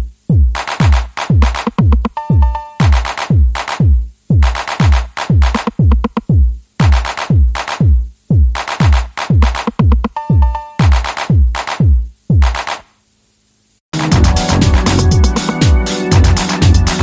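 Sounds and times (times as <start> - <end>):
deep kick drum: 0.0 - 12.6, 14.0 - 17.0
electronic dance music: 0.0 - 12.9, 14.0 - 17.0
short synth chord: 14.0 - 17.0.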